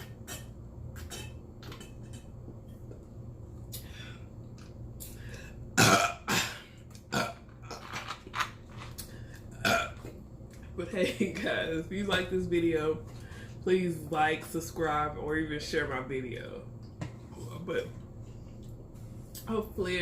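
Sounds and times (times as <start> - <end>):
loud burp: 5.8 - 7.5, 9.5 - 10.0
weaker belches: 5.8 - 7.5, 9.5 - 10.0.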